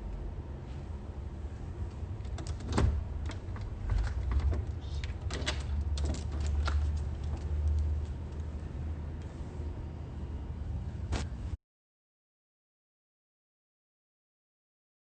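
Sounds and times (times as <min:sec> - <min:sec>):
clicks and knocks of handling: 0:01.9 - 0:08.5.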